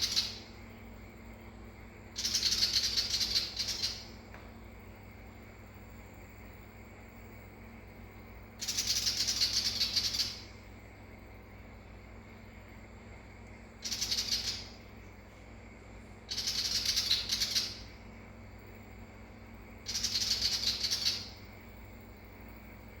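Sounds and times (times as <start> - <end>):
bird scolding chatter: 0.0 - 0.5, 2.2 - 4.2, 8.6 - 10.6, 13.8 - 14.9, 16.3 - 18.0, 19.8 - 21.4.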